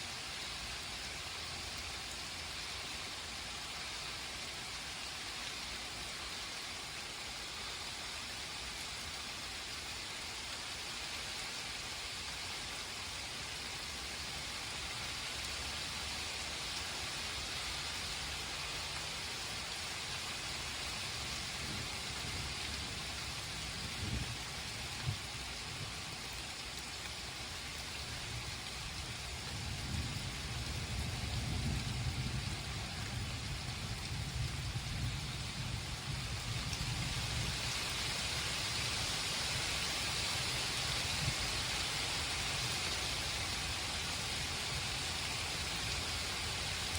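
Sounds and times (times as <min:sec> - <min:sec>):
rain hissing down: 0:00.0 - 0:46.9
low thunder rumble: 0:29.4 - 0:37.6.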